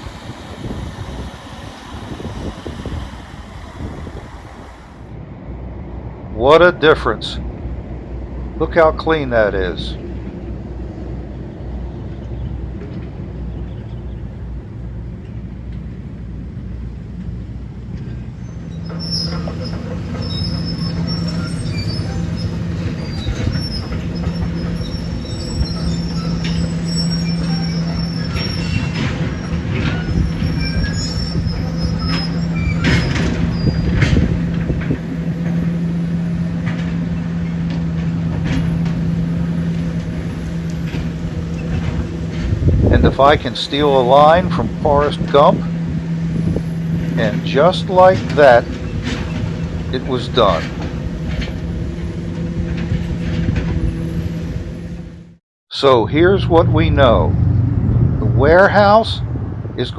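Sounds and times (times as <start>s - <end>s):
heavy machinery engine hum: 0.0s - 6.5s, 7.4s - 59.8s
metallic squealing: 18.4s - 55.3s.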